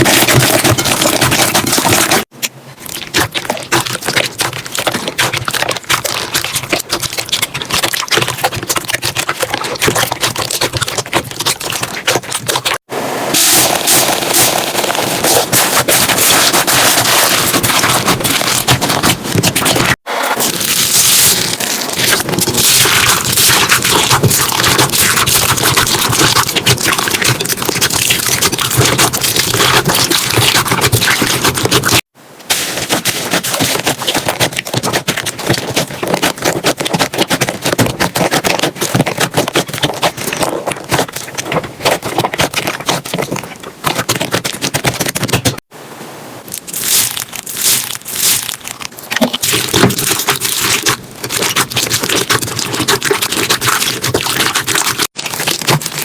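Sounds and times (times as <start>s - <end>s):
slime crackling and popping: 0.0s - 45.6s, 46.5s - 56.0s.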